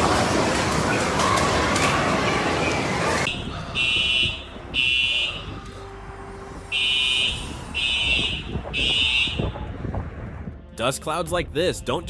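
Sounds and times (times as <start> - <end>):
electronic alarm beeps: 3.3 - 5.5, 6.6 - 9.5.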